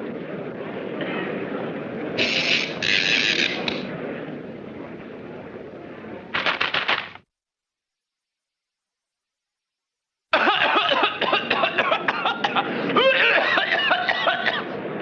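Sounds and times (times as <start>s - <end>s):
audience coughing and laughing: 10.4s - 14.8s.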